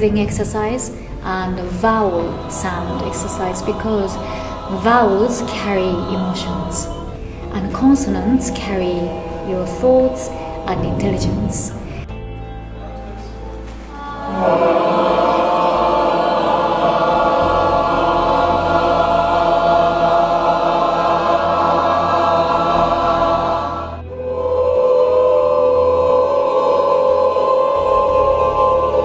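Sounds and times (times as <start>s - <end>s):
group singing held vowel: 1.3s - 12.1s, 13.8s - 29.0s.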